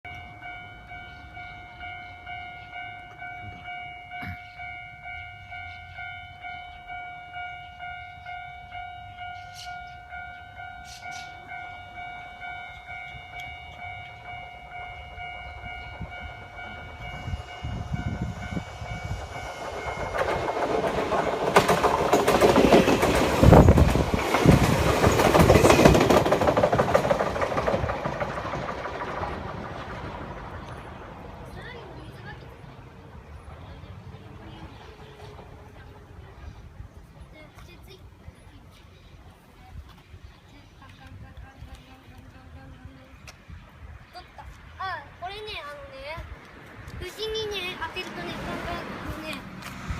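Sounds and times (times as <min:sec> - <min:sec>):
level-crossing alarm bell: 0:00.1 - 0:21.6
train rumble: 0:00.1 - 0:49.9
wheel clacks: 0:19.2 - 0:31.8.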